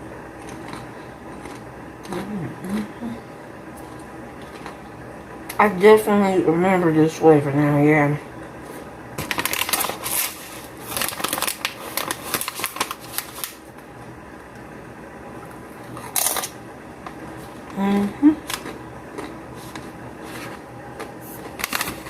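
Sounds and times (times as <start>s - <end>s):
crunching chips being chewed: 0.4s - 2.9s, 3.8s - 4.9s, 9.2s - 13.6s, 18.4s - 22.0s.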